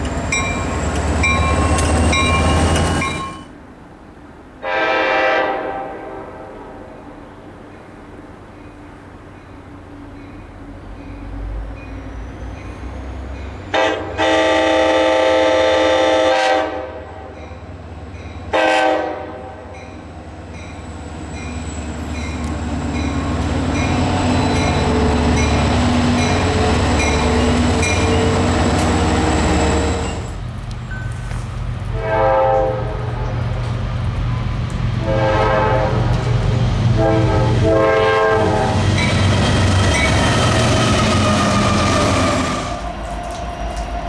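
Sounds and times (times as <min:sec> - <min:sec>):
wheel noise on rails: 0:00.0 - 0:04.6, 0:19.8 - 0:44.0
train rumbling past: 0:00.0 - 0:44.0
locomotive air horn: 0:04.6 - 0:06.9, 0:13.7 - 0:17.4, 0:18.5 - 0:19.8, 0:31.9 - 0:33.3, 0:35.0 - 0:36.3, 0:36.9 - 0:38.9.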